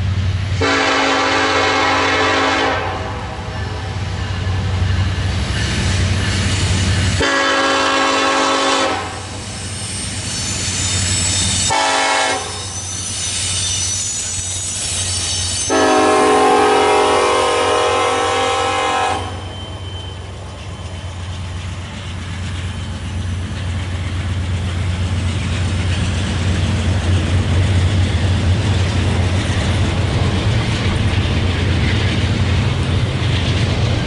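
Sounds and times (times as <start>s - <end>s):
train rolling by: 0.0s - 34.0s
train wheel noise: 0.0s - 34.0s
locomotive air horn: 0.6s - 3.4s, 7.2s - 9.3s, 11.6s - 12.7s, 15.7s - 19.5s.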